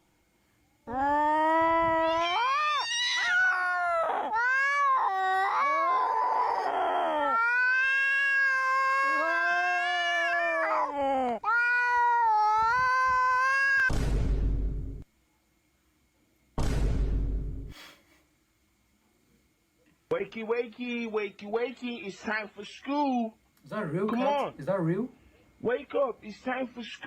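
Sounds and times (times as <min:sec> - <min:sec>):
cat yowling: 0:00.9 - 0:13.9.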